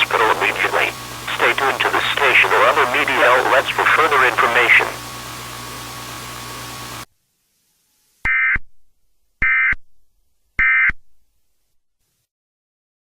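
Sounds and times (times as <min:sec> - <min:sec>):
hiss with faint steady tone: 0:00.0 - 0:06.7.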